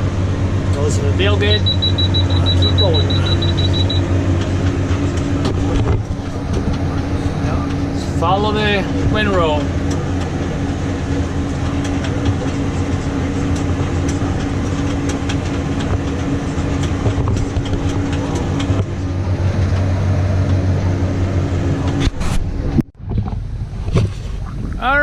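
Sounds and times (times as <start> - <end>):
baler driveline hum: 0.0 - 25.0
tractor engine running: 0.0 - 25.0.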